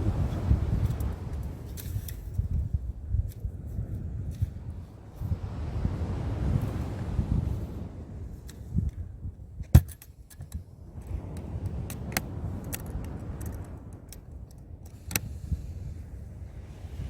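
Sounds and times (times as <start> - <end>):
wind rumbling on microphone: 0.0 - 17.0
small clicks and clinks: 9.6 - 10.6, 11.9 - 15.2.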